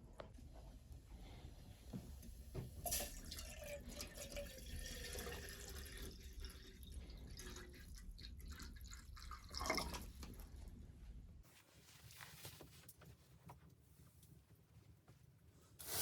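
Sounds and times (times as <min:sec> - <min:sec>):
water pouring and dripping: 0:02.8 - 0:10.5.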